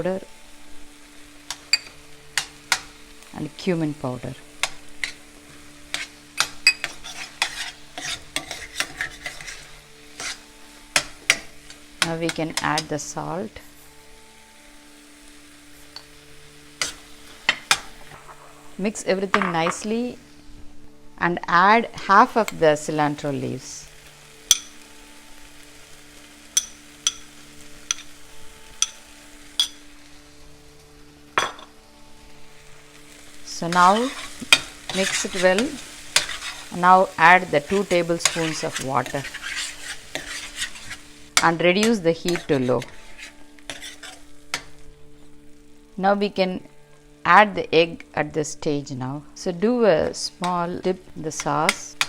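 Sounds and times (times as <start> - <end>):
gentle sizzle: 0.0 - 52.0
utensil scraping through sauce: 6.8 - 10.5, 33.8 - 36.8, 37.7 - 41.1, 42.3 - 44.3.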